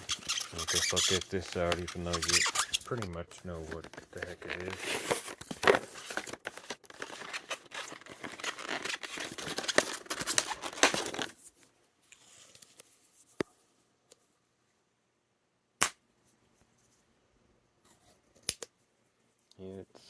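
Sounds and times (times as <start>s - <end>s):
plastic packaging crinkling and tearing: 0.0s - 11.4s.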